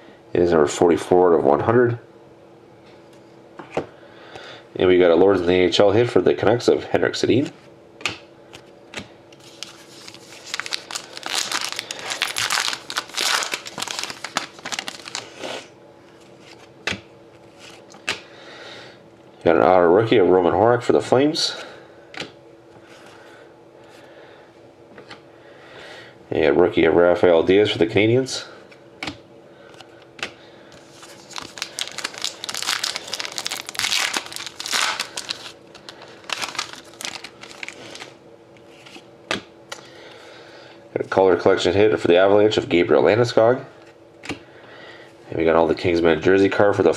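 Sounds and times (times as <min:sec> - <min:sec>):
plastic wrapper tearing and crinkling: 0:09.4 - 0:15.7, 0:30.8 - 0:38.2.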